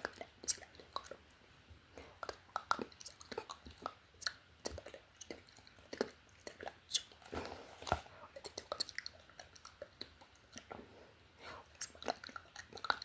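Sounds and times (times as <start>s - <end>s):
wet mouth clicks and smacks: 0.0s - 1.2s, 2.2s - 7.2s, 11.8s - 13.0s.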